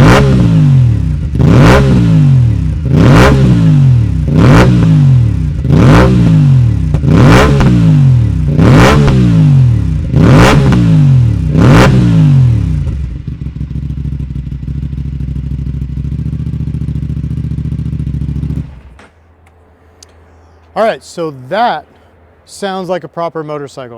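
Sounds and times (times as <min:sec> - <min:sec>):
motorcycle engine revving: 0:00.0 - 0:19.1
motorcycle engine idling: 0:10.8 - 0:19.0.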